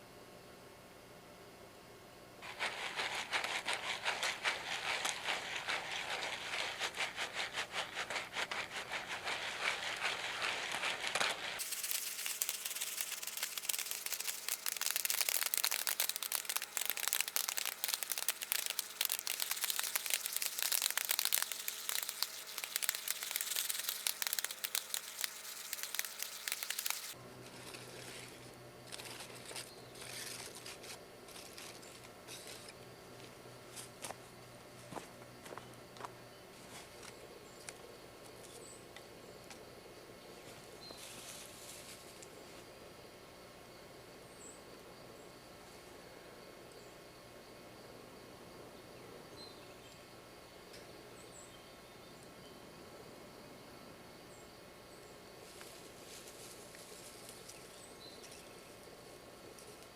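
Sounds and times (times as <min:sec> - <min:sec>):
campfire crackling: 0:10.2 - 0:27.2.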